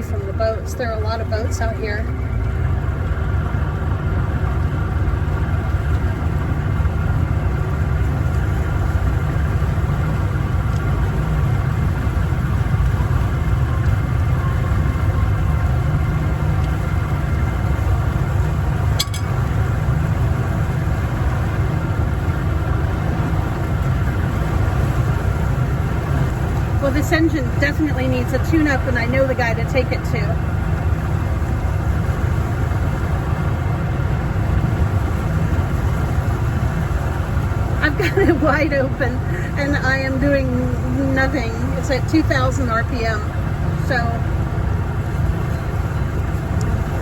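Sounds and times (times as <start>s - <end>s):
boat engine rumbling: 0.0s - 47.0s.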